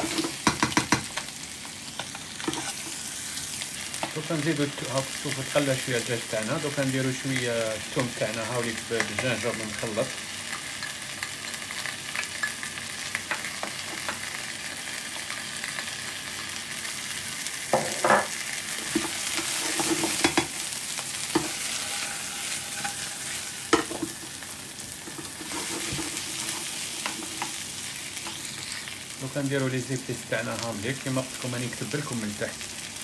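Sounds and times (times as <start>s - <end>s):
food sizzling in hot oil: 0.0s - 33.0s
utensil scraping a pan: 2.4s - 3.1s, 18.8s - 27.6s.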